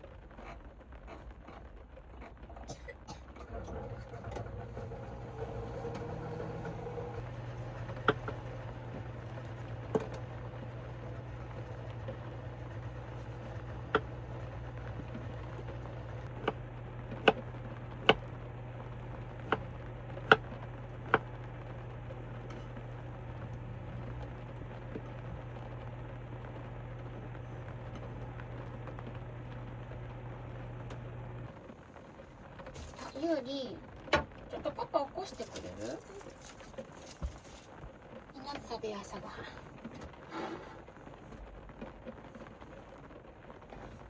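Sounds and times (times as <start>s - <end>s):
raindrops tapping on roof: 0.0s - 44.0s
steady low hum: 2.6s - 33.2s.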